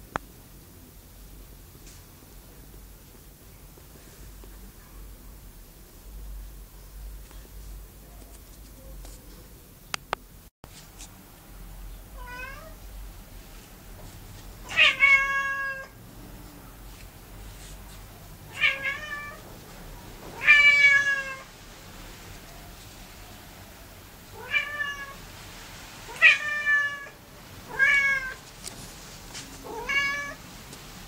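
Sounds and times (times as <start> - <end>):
cat meowing: 12.2 - 12.8, 14.6 - 16.0, 18.5 - 19.4, 20.3 - 21.5, 24.4 - 25.2, 26.1 - 28.4, 29.6 - 30.4.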